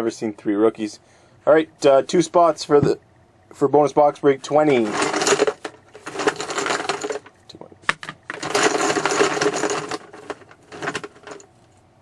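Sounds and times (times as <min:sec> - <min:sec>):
pieces rattling in shaken container: 0:04.6 - 0:07.4, 0:08.2 - 0:11.4.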